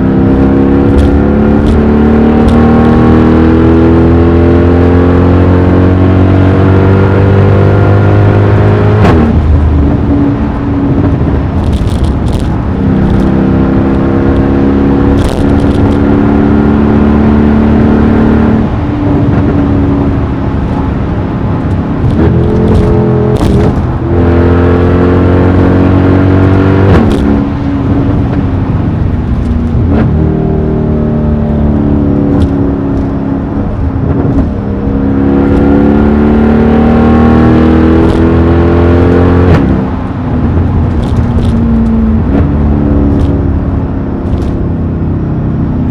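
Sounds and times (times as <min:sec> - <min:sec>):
car engine revving: 0:00.0 - 0:45.9
exhaust pops and crackles: 0:00.9 - 0:02.7, 0:09.0 - 0:14.5, 0:15.1 - 0:16.0, 0:21.6 - 0:24.1, 0:26.5 - 0:30.2, 0:32.2 - 0:34.6, 0:38.0 - 0:38.4, 0:39.4 - 0:44.7.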